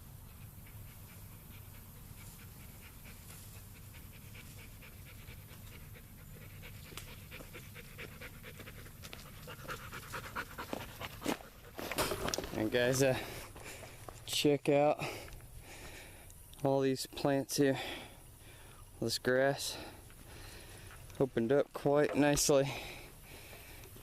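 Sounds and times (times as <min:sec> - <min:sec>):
dog panting: 0:00.0 - 0:11.8, 0:19.7 - 0:21.4.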